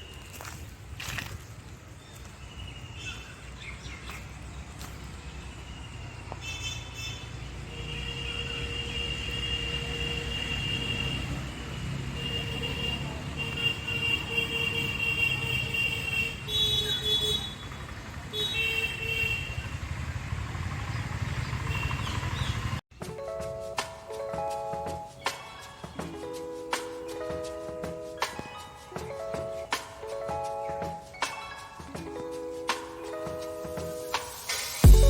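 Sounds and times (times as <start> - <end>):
road traffic rumbling: 0.0 - 22.8
long vehicle horn blasts: 7.7 - 19.8, 21.7 - 22.1
background music: 22.9 - 35.0.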